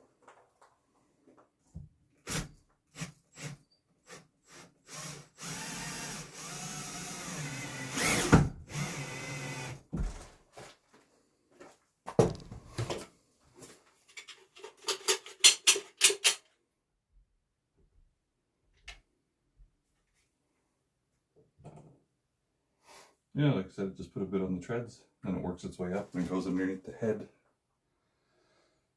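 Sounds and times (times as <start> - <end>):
cordless drill driving a screw: 2.3 - 9.8.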